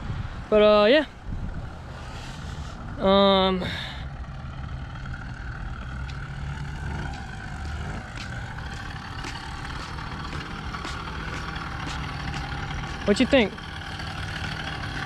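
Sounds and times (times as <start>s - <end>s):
two-stroke engine chugging: 3.7s - 15.0s.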